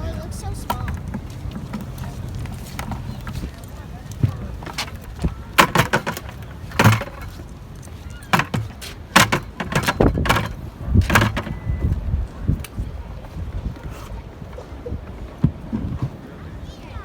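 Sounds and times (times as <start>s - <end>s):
sharp knocks and clunks: 0.6s - 3.5s, 4.1s - 7.5s, 8.2s - 11.9s.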